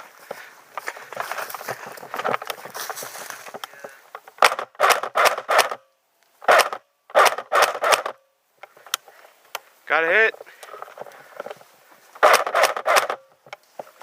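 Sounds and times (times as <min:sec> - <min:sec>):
rustling of movement: 0:00.0 - 0:14.0
airsoft gun shots: 0:04.4 - 0:05.8, 0:06.4 - 0:08.2, 0:12.2 - 0:13.2.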